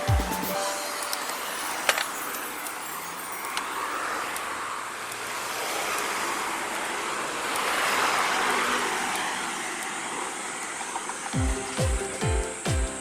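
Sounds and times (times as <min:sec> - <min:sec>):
rushing wind and road noise: 0:02.0 - 0:11.4.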